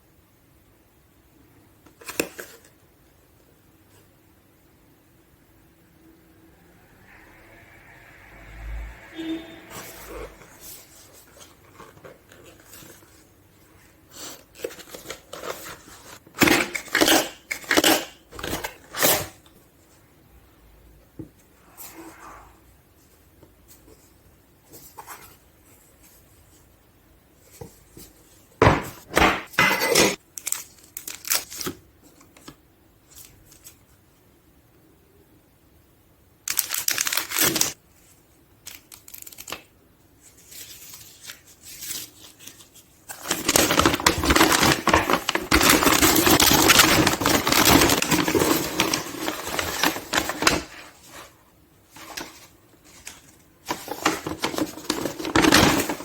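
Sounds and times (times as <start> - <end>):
packaging rustling and crinkling: 14.1 - 19.4, 30.4 - 32.3, 36.5 - 56.0.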